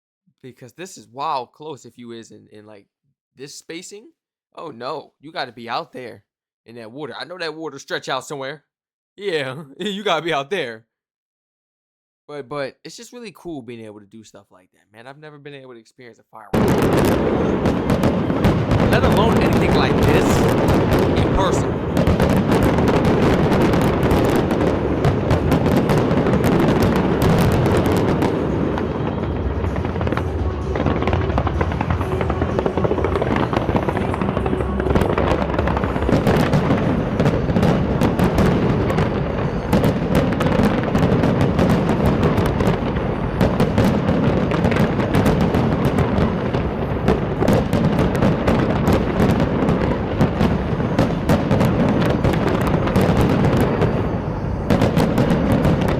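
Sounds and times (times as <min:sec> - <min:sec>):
fireworks bangs and crackling: 0:16.5 - 0:55.9
music playing: 0:18.9 - 0:20.5, 0:21.2 - 0:21.8, 0:28.4 - 0:37.2
deep rumble: 0:24.8 - 0:39.7.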